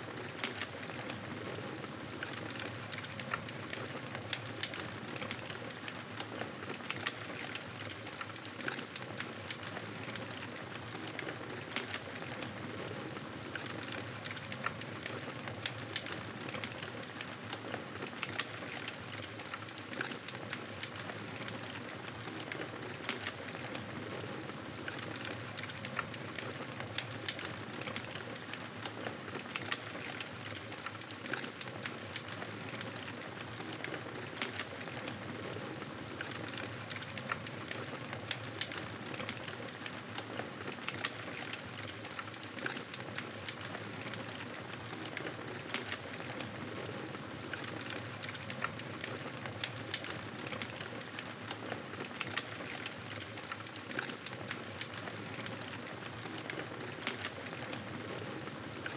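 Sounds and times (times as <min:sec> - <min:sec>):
campfire crackling: 0:40.2 - 0:58.9.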